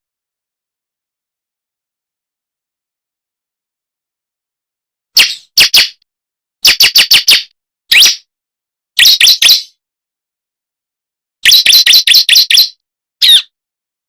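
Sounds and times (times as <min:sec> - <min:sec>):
bird sharp chirps: 0:05.2 - 0:06.0, 0:06.6 - 0:08.3, 0:09.0 - 0:09.8, 0:11.4 - 0:13.6.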